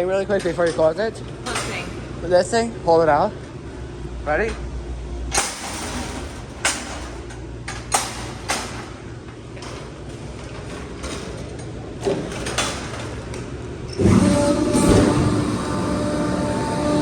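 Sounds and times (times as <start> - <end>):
low steady hum: 0.0 - 17.0
metal clanks and clicks: 5.3 - 9.0.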